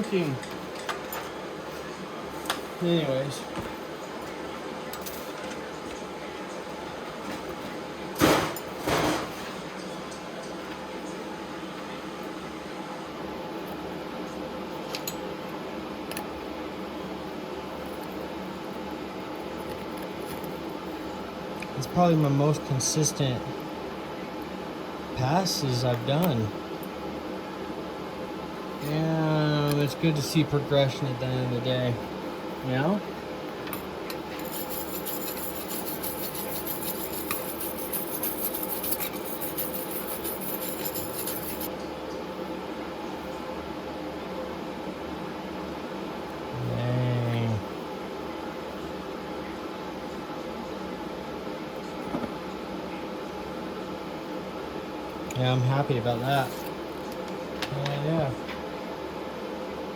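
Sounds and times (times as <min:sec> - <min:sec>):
mechanical hum: 0:00.0 - 0:59.9
machine hum: 0:23.3 - 0:49.5.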